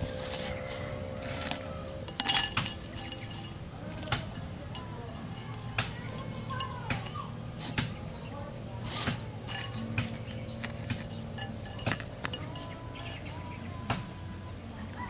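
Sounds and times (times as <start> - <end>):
steady low hum: 0.0 - 15.0
kitchenware clinking and knocking: 2.0 - 8.1, 9.0 - 14.0.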